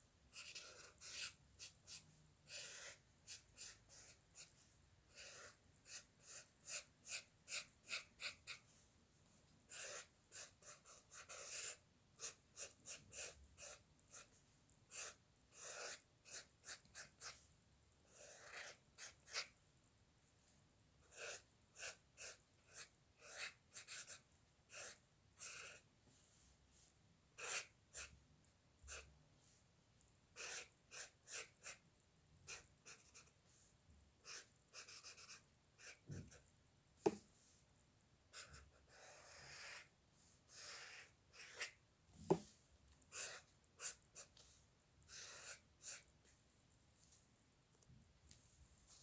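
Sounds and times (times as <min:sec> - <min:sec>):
pen strokes on drawing surface: 0:00.0 - 0:08.9, 0:09.6 - 0:19.6, 0:21.0 - 0:28.2, 0:28.8 - 0:29.7, 0:30.3 - 0:31.8, 0:32.4 - 0:37.7, 0:38.3 - 0:46.2.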